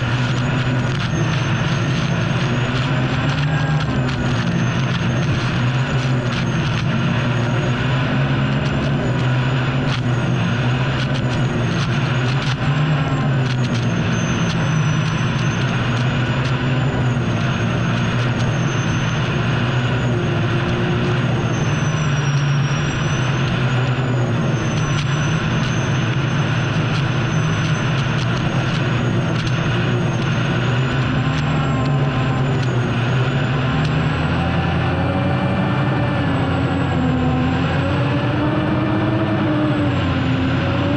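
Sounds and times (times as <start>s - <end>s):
turbine engine whine and rumble: 0.0s - 40.9s.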